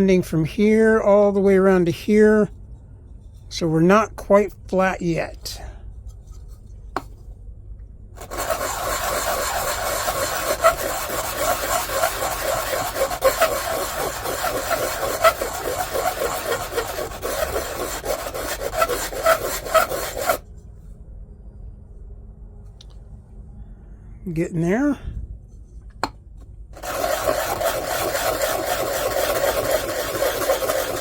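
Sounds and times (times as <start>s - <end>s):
plastic rubbed on sandpaper: 8.2s - 20.4s, 26.8s - 31.0s.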